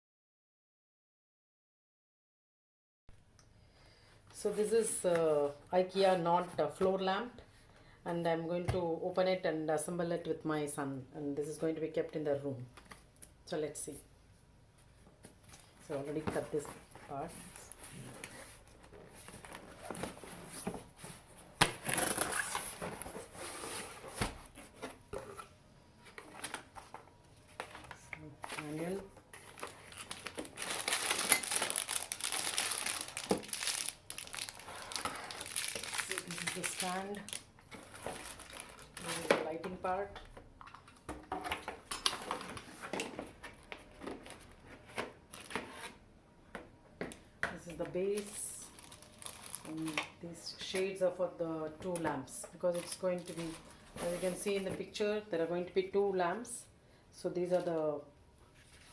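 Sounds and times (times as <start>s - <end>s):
cardboard rustling and scraping: 16.0s - 32.3s
packaging rustling: 26.1s - 39.3s, 48.2s - 50.1s.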